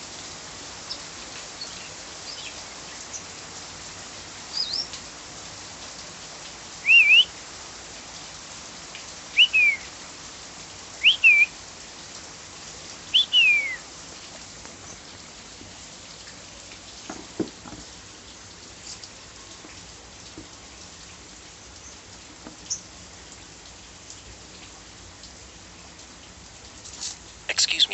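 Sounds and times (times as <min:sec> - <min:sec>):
steady rain: 0:00.0 - 0:27.9
bird whistling: 0:06.9 - 0:07.3, 0:09.4 - 0:09.9, 0:11.0 - 0:11.5, 0:13.2 - 0:13.8.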